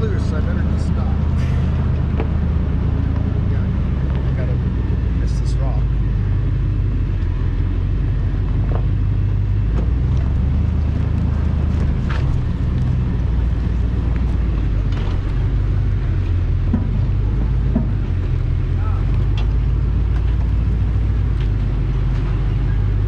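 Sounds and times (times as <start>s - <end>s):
truck engine droning low: 0.0s - 23.0s
truck jolting over bumps: 8.5s - 23.0s.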